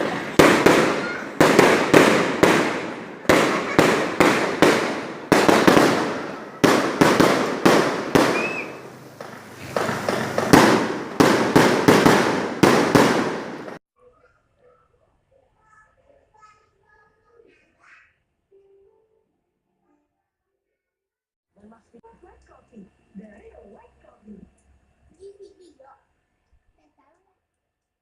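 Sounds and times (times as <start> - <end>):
firework whistle: 0.0 - 13.8
fireworks banging: 0.0 - 13.8.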